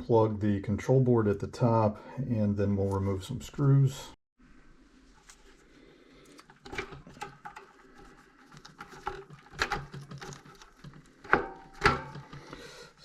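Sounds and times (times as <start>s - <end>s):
handling knocks and rattle: 6.5s - 12.6s.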